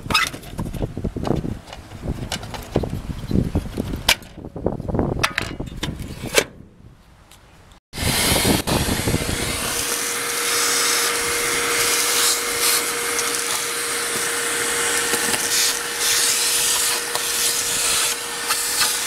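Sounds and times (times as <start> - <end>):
small motor blowing air: 8.0 - 19.0.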